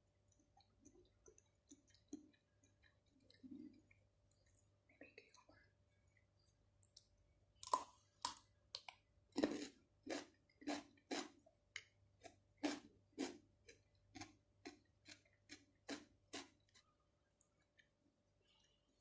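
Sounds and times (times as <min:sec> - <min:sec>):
wet chewing sounds: 0:00.2 - 0:04.6.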